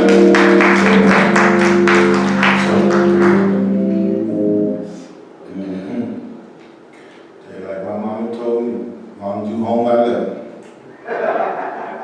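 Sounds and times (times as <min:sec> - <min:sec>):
sustained held chords: 0:00.0 - 0:05.4.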